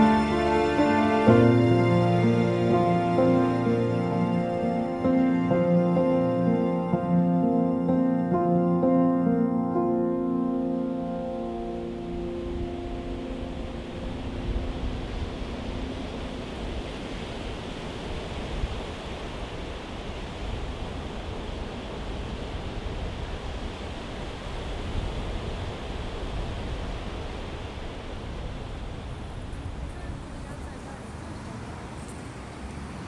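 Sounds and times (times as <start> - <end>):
held piano notes: 0.0 - 17.5
steady rushing noise: 0.0 - 30.7.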